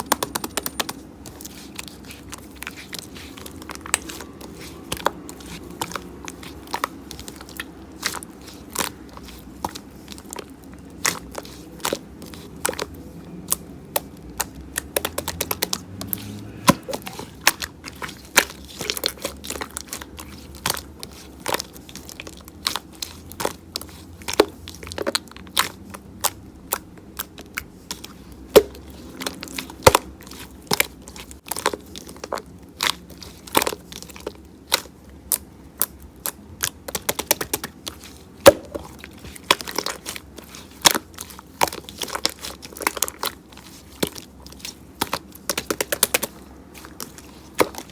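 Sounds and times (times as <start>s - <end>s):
slime popping under hands: 0.0s - 1.0s.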